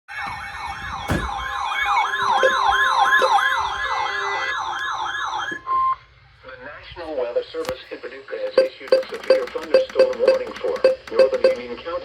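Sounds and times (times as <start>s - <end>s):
electronic siren sweeping: 0.1s - 6.0s
steady alert tone: 8.6s - 11.6s.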